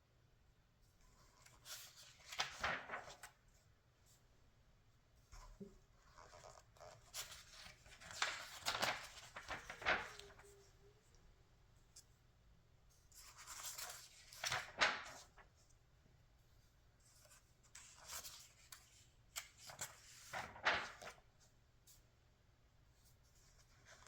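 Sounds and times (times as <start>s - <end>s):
magazine pages turning: 1.3s - 3.4s, 6.1s - 10.6s, 13.2s - 15.5s, 17.2s - 21.2s.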